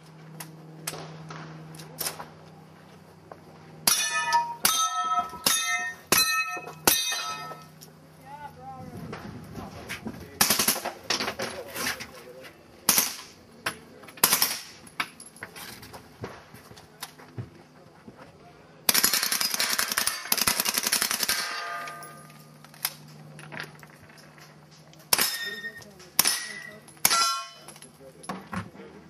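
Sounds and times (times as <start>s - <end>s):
steel plates clanging: 3.9s - 7.7s, 25.2s - 27.9s
gunshots: 10.4s - 11.0s, 12.9s - 13.4s, 14.2s - 14.8s, 25.1s - 27.6s.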